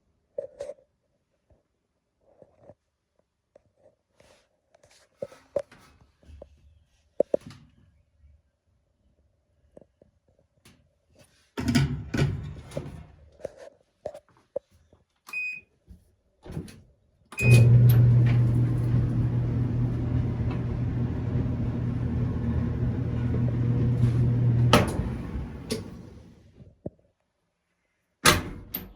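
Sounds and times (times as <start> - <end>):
dryer motor and drum humming: 17.4 - 26.5.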